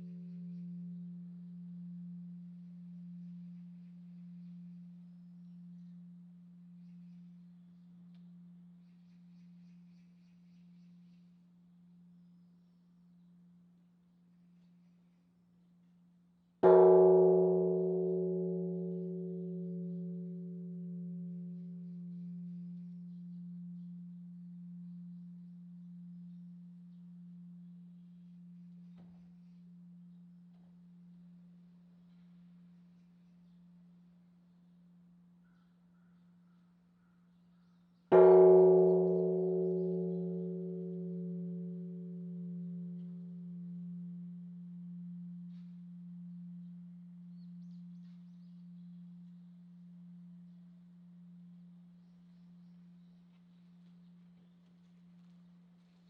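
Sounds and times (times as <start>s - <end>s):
large bronze bell humming: 0.0s - 13.7s, 16.6s - 56.0s
bronze bell humming: 38.1s - 53.0s.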